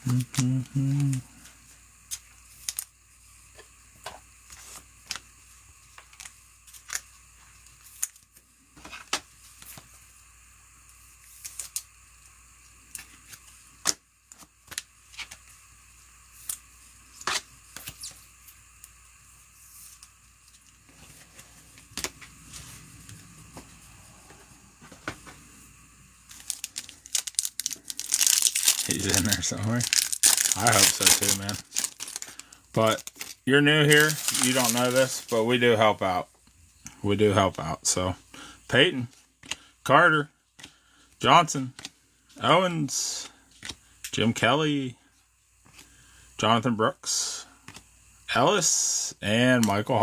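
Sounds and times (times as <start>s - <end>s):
cards clicking and tapping: 39.4s - 39.7s, 40.6s - 40.8s, 47.6s - 47.9s.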